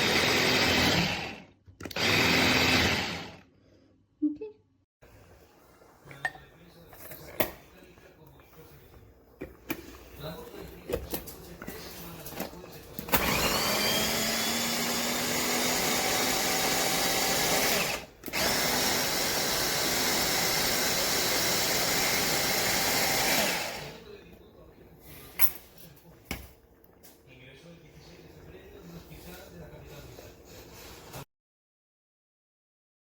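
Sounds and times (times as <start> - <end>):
food chopper motor running: 0.0 - 3.4, 13.1 - 24.0.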